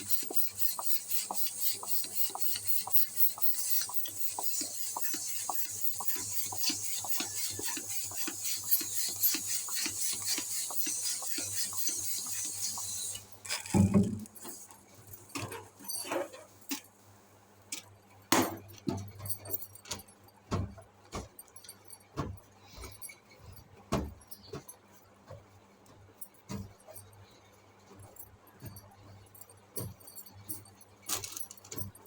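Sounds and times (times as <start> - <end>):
air hissing: 0.0 - 14.7.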